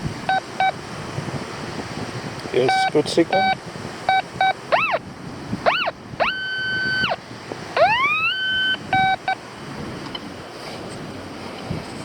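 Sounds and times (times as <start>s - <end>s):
wind: 0.0s - 12.0s
metal detector tones: 2.6s - 5.0s, 5.6s - 7.2s, 7.8s - 9.4s
short beeps: 2.6s - 5.0s, 5.7s - 7.2s, 7.8s - 9.4s.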